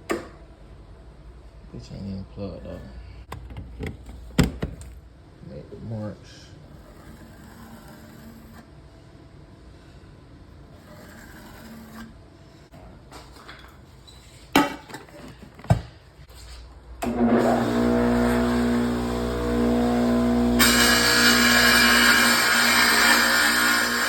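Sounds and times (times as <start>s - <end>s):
saw blade grinding tile: 6.8s - 8.6s, 10.8s - 12.2s, 20.0s - 24.0s
tile saw motor whine: 17.0s - 24.0s.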